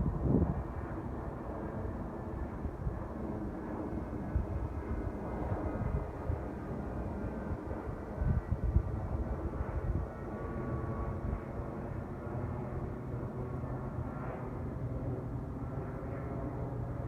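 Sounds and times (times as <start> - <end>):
wind buffeting microphone: 0.0 - 11.7.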